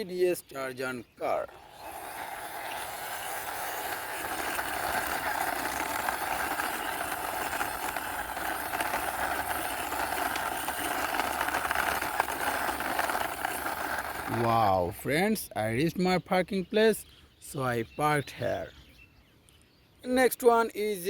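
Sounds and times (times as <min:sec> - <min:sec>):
toy car wheels rolling on floor: 0:01.3 - 0:15.0.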